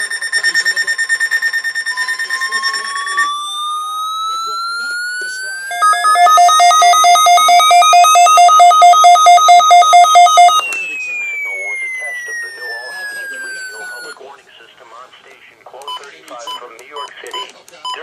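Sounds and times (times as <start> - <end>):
fast-pulsing beep: 0.0 - 14.2
two-tone beep pulsing: 0.0 - 14.2
slowly rising electronic tone: 1.9 - 14.2.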